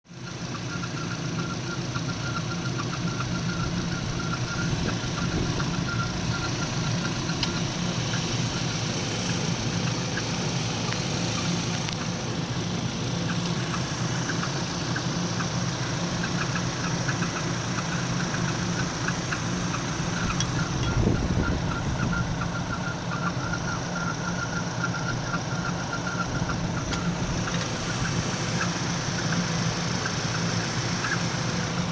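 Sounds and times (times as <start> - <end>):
car engine running: 0.1 - 31.9.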